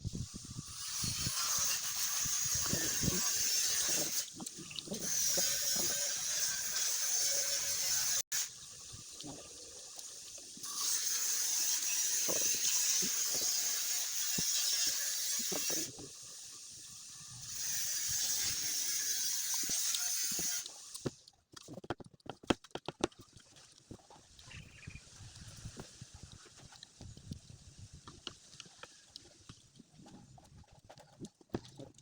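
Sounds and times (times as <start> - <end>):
chewing and crunching: 20.7 - 24.6, 25.2 - 32.0.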